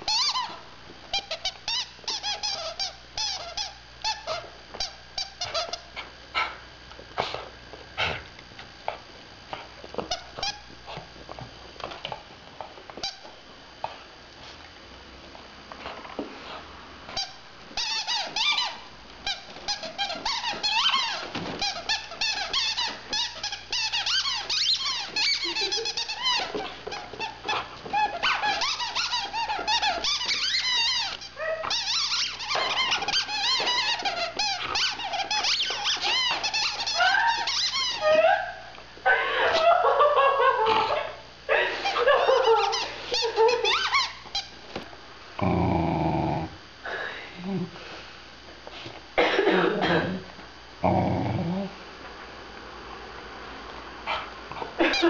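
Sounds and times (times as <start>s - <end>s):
squeaky toy squealing: 0.1s - 0.5s, 27.5s - 38.1s, 42.5s - 44.2s.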